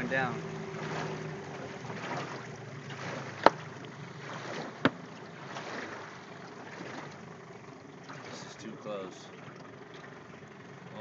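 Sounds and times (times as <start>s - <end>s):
sharp knocks on a boat: 0.0s - 7.2s
water around a boat: 0.0s - 11.0s
wind: 0.0s - 11.0s.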